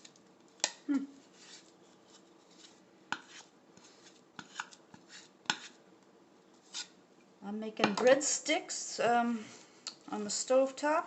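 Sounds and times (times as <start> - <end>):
dough stirred and scraped in bowl: 1.2 - 5.8, 6.5 - 7.0.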